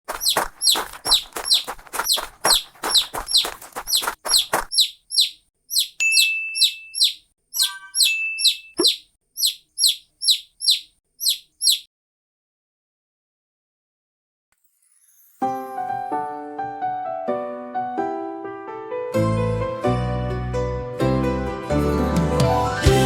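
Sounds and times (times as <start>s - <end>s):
bird chirping: 0.1s - 11.9s
whistle-like tone: 5.8s - 11.8s.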